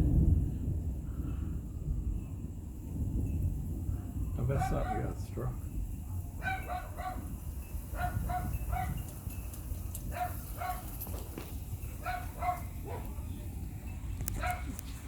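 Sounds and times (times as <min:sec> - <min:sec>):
low rumble: 0:00.0 - 0:04.4
dog barking: 0:04.0 - 0:05.2, 0:06.4 - 0:07.3, 0:07.9 - 0:09.0, 0:10.0 - 0:11.0, 0:12.0 - 0:13.2, 0:14.3 - 0:14.8.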